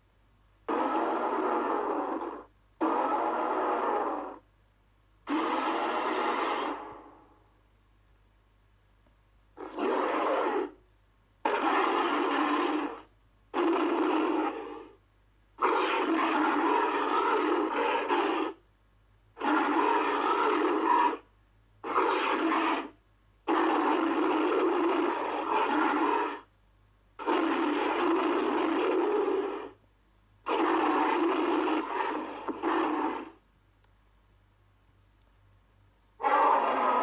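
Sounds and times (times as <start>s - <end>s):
monster roars: 0.7s - 4.4s, 5.3s - 7.0s, 9.6s - 10.8s, 11.4s - 15.0s, 15.6s - 18.6s, 19.4s - 21.2s, 21.8s - 22.9s, 23.5s - 26.4s, 27.2s - 29.8s, 30.5s - 33.4s, 36.2s - 37.0s.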